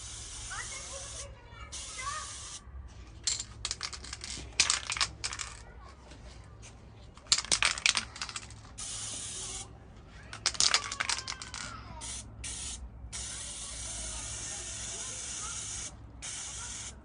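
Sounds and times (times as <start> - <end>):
spray paint hiss: 0.0 - 2.6, 8.8 - 9.7, 12.0 - 17.0
spray can ball rattling: 3.2 - 5.6, 7.2 - 9.6, 10.3 - 16.9.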